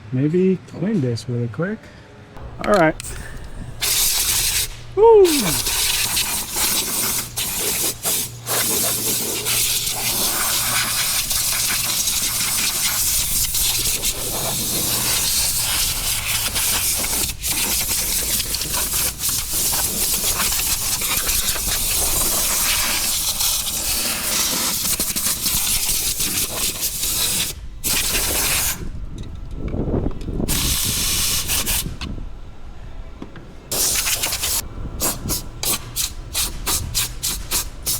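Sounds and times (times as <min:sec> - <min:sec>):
low motor hum: 0:02.4 - 0:08.5
air cleaning tool hissing: 0:03.0 - 0:28.8, 0:30.5 - 0:32.0, 0:33.7 - 0:37.9.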